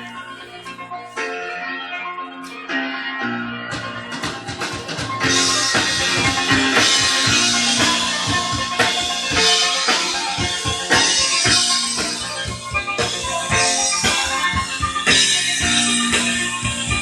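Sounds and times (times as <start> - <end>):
sustained melodic notes: 0.0 - 17.0
drum-kit beat: 3.7 - 17.0.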